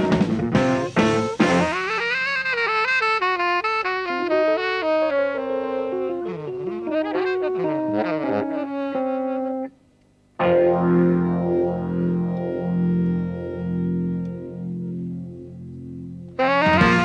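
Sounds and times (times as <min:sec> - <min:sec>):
jazz fusion saxophone with band: 0:00.0 - 0:09.8, 0:11.4 - 0:17.0
sustained keyboard chords: 0:00.0 - 0:17.0.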